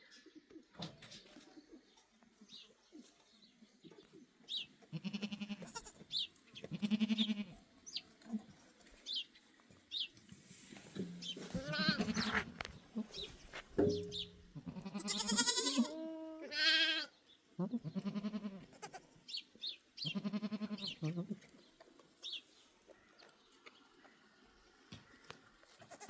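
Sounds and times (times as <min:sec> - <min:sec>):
goats bleating: 0:04.8 - 0:06.1, 0:06.7 - 0:07.6, 0:11.5 - 0:12.4, 0:14.6 - 0:19.1, 0:20.1 - 0:21.4.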